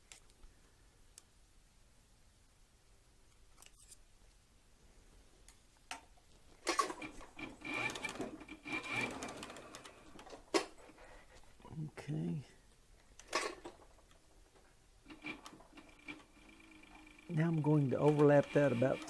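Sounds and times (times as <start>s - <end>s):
sewing machine stitching leather: 6.6s - 10.7s, 15.1s - 19.0s.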